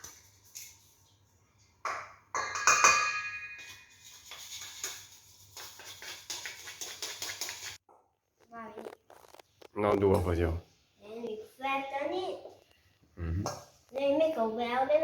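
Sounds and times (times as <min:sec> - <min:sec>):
metal kitchenware knocking: 0:01.9 - 0:03.8
ringing metal clang: 0:02.4 - 0:03.6.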